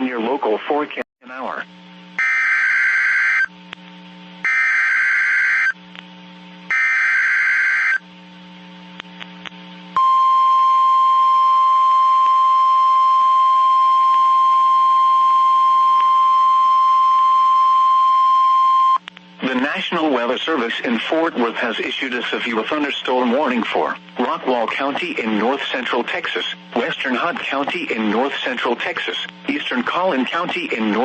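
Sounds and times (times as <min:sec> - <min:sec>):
steady warning alarm tone: 0:02.2 - 0:03.5, 0:04.4 - 0:05.8, 0:06.7 - 0:08.0.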